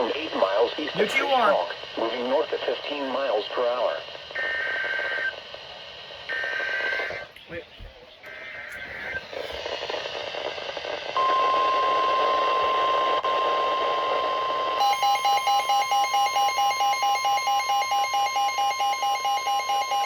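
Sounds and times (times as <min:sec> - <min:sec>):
radio hiss: 0:00.0 - 0:14.6
high warning alarm tone: 0:14.8 - 0:20.0
rapid electronic beeping alarm: 0:14.8 - 0:20.0.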